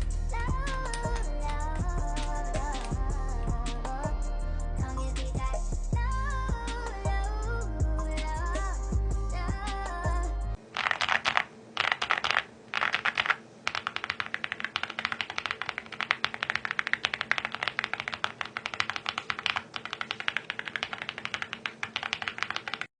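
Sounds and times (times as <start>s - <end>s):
keyboard typing: 10.8s - 22.9s.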